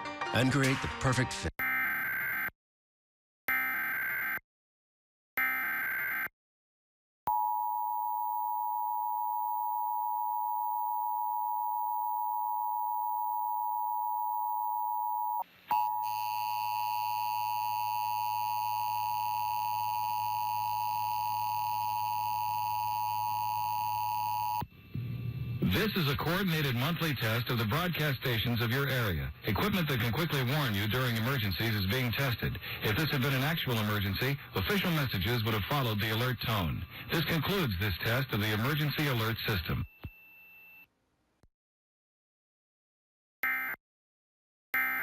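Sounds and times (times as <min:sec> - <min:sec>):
faint hum: 0:07.3 - 0:27.7.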